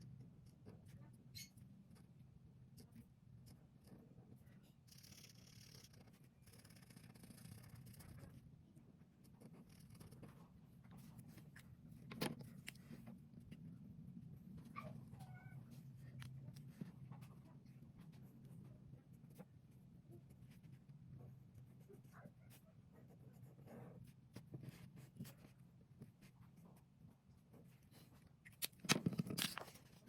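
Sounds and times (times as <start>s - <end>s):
low room hum: 0.0s - 30.0s
pen scratching on paper: 21.6s - 25.5s.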